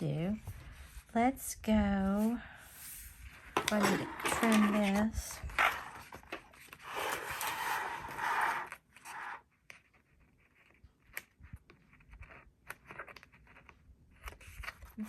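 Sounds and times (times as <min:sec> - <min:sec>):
paper scraping rustle: 0:02.8 - 0:10.8.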